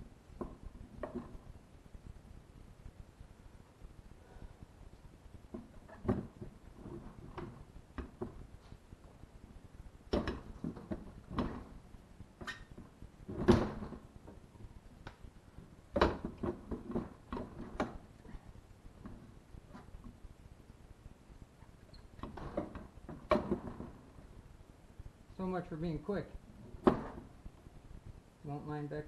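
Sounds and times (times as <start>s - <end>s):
metal clunks and knocks: 5.5s - 8.4s, 10.1s - 11.8s, 12.4s - 14.4s, 15.9s - 18.0s, 22.2s - 24.1s, 26.7s - 27.4s.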